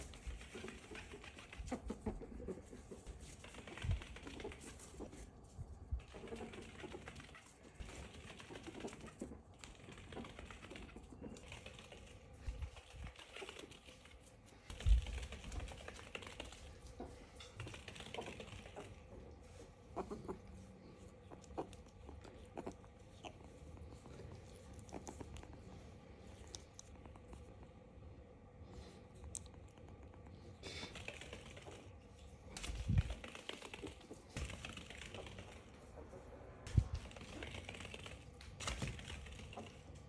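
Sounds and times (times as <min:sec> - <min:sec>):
ferret dooking: 0:00.0 - 0:40.0.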